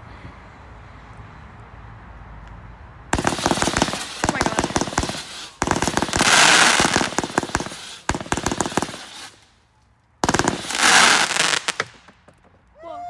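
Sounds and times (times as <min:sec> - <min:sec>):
fireworks hissing: 0:03.2 - 0:09.5, 0:10.2 - 0:12.0
fireworks crackling: 0:03.2 - 0:09.6, 0:10.2 - 0:12.2.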